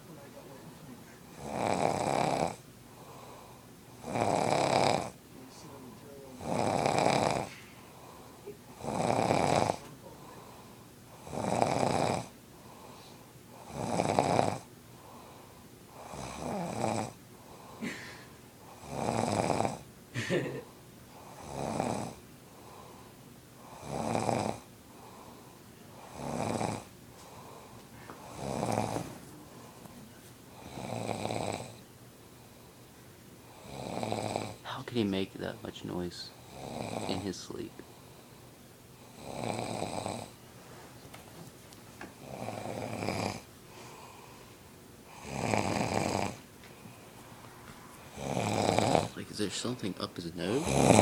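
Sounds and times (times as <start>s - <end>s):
man snoring: 1.3s - 5.2s, 6.4s - 13.0s, 13.6s - 18.0s, 18.6s - 19.9s, 21.1s - 23.0s, 23.6s - 25.4s, 26.0s - 29.1s, 30.5s - 31.8s, 33.5s - 34.8s, 35.9s - 37.6s, 39.0s - 40.4s, 42.2s - 44.4s, 45.1s - 46.4s, 48.0s - 49.8s, 50.4s - 51.0s.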